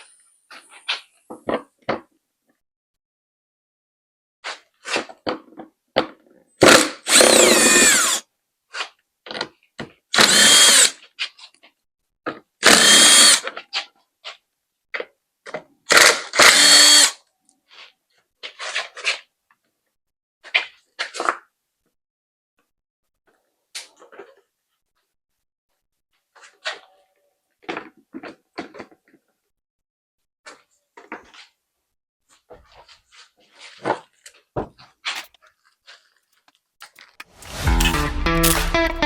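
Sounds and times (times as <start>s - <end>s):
power drill-driver whine: 6.7s - 8.2s, 10.2s - 11.0s, 12.6s - 13.6s, 15.9s - 17.2s
clicks and rattles of parts: 36.3s - 37.3s.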